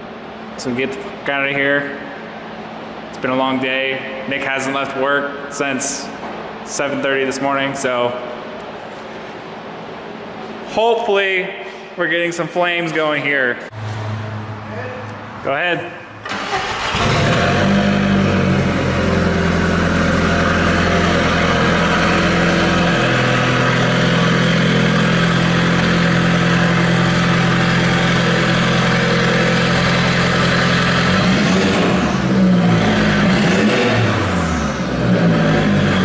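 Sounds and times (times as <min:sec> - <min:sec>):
car engine idling and revving: 0:16.2 - 0:36.0.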